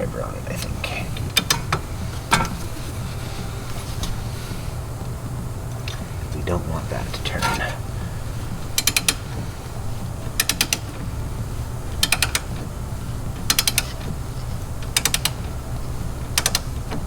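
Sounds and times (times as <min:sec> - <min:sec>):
steady low hum: 0:00.0 - 0:17.0
ratchet wrench clicking: 0:08.8 - 0:09.2, 0:12.0 - 0:12.5, 0:13.5 - 0:14.0, 0:14.9 - 0:15.4, 0:16.4 - 0:16.7.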